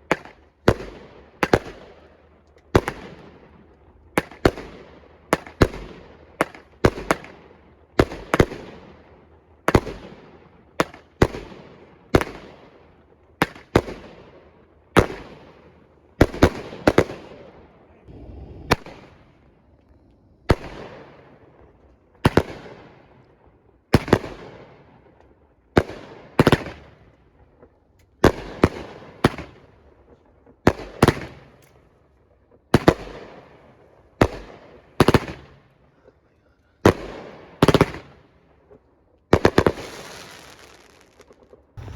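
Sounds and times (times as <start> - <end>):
fireworks bangs with echo: 0.0 - 2.1, 2.7 - 12.8, 13.4 - 25.1, 28.2 - 29.8, 30.4 - 31.6, 32.6 - 35.7, 36.8 - 41.9.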